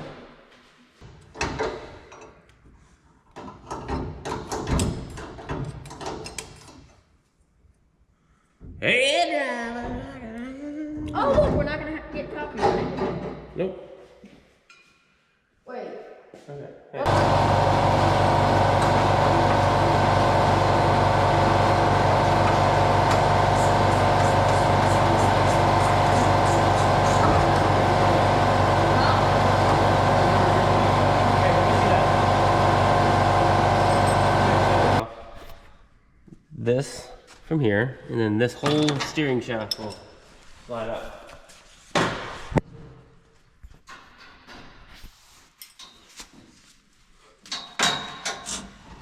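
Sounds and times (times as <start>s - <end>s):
machine droning: 17.1s - 35.0s.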